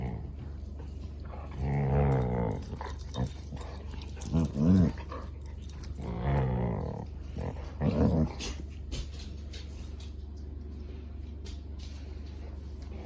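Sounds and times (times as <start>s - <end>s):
dog growly barks: 0.0s - 0.3s, 1.3s - 8.6s
dog growling: 0.0s - 8.7s.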